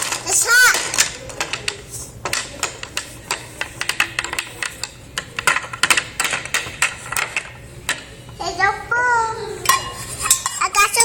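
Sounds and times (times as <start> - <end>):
cups and dishes clattering: 9.6 - 11.0.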